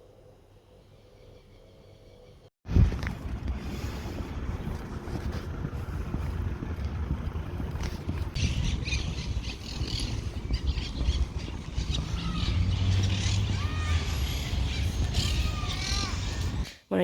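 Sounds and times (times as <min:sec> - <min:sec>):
wind buffeting microphone: 0:02.7 - 0:16.7
birds calling: 0:08.2 - 0:16.8
scratchy high bird chatter: 0:08.4 - 0:16.7.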